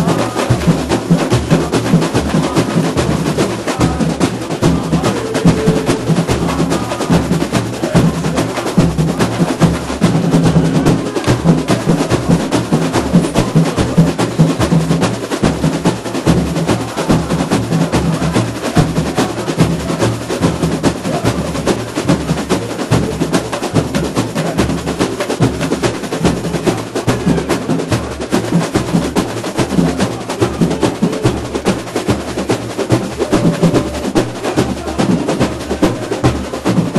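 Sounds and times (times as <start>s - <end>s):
deep bass drums: 0.0s - 21.5s, 32.9s - 36.9s
fast snare and small-drum strokes: 0.0s - 36.9s.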